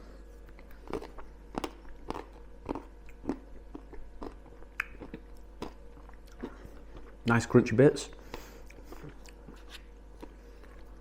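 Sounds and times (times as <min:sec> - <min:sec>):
person chewing crunchy ice cream: 0:00.3 - 0:07.2, 0:08.2 - 0:11.0.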